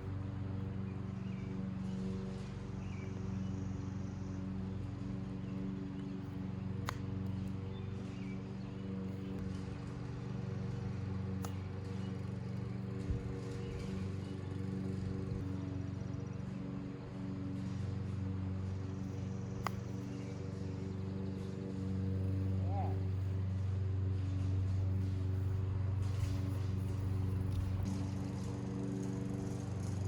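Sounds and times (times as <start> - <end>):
small engine running: 0.0 - 30.0.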